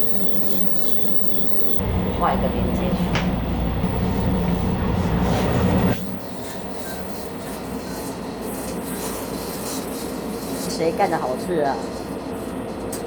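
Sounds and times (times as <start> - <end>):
train rumble and rattle: 1.8 - 6.8.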